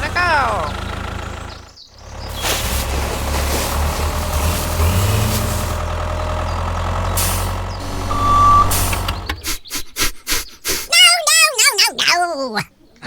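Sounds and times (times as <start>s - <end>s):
short beep: 7.8s - 9.2s.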